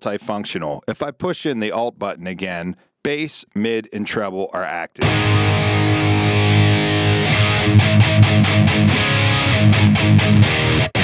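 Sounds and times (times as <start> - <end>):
distorted electric guitar chords: 5.0 - 11.0.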